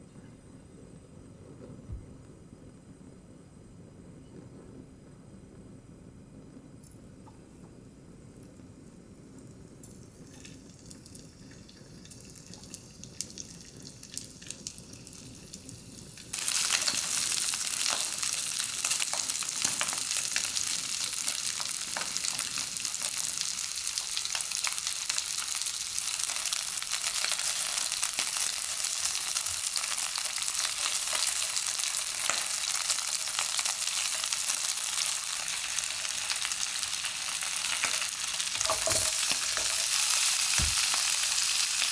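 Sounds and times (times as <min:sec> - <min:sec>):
frying pan hissing and crackling: 0:09.1 - 0:41.9
food sizzling in hot oil: 0:09.8 - 0:41.9.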